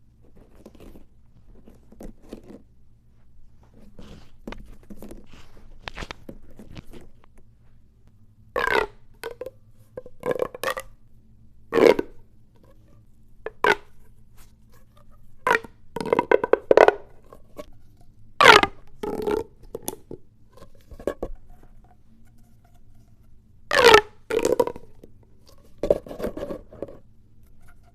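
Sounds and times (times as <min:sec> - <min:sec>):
plastic pop tubes crackling: 0:08.6 - 0:10.9, 0:13.5 - 0:14.0, 0:15.4 - 0:17.1, 0:18.4 - 0:20.2, 0:23.7 - 0:25.1.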